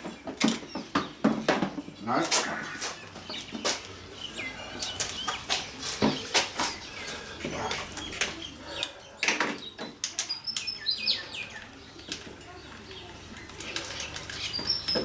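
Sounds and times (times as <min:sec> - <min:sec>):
birds chirping: 0:00.0 - 0:15.0
hand tools clicking and knocking: 0:12.0 - 0:15.0.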